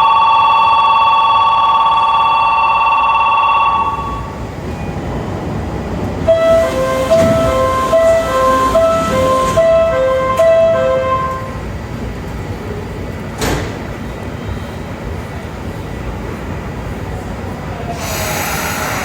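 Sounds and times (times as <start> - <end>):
electronic emergency alarm: 0.0 - 4.3, 6.3 - 11.2
train and platform rumble: 0.0 - 19.0
hissing train noise: 4.0 - 19.0.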